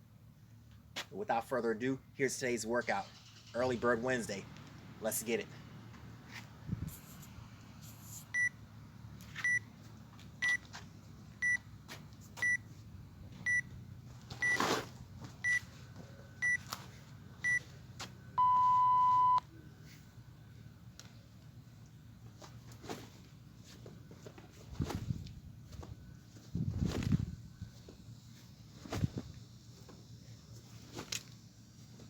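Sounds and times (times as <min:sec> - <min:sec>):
long low timer beep: 0:18.4 - 0:19.4
short high timer beeps: 0:18.4 - 0:19.4.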